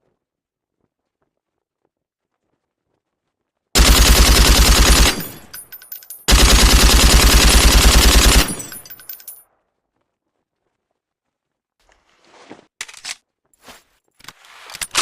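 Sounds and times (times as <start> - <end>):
machine gun automatic fire: 3.8 - 5.6, 6.3 - 9.0
metallic clicks and ringing: 5.0 - 6.4, 7.8 - 9.4.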